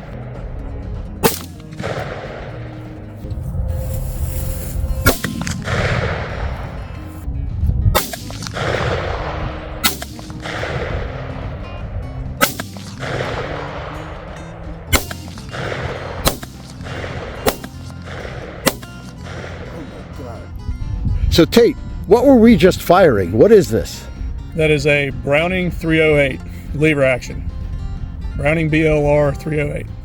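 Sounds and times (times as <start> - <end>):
rifle shots with echo: 0.0 - 3.3, 5.0 - 7.3, 7.9 - 20.4
background music: 0.0 - 30.0.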